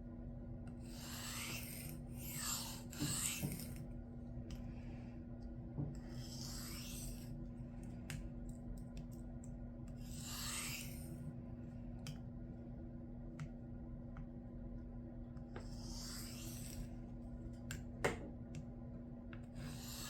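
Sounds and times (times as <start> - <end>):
steady low hum: 0.0 - 20.0
knife on sharpening stone: 1.0 - 3.8, 6.4 - 7.2.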